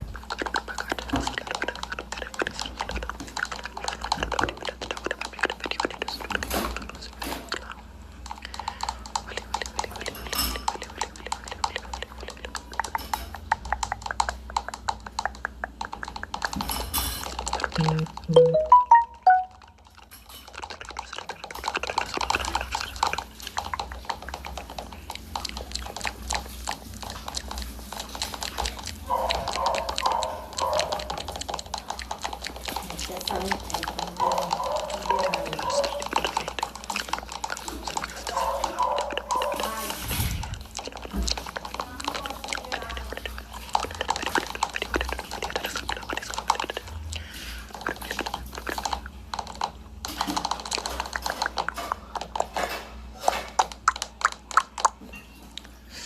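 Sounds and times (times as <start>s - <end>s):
rapid clicking and crackling: 0.0s - 18.3s, 19.6s - 55.0s
dog sounds: 0.0s - 56.0s
electronic blips: 17.8s - 19.5s.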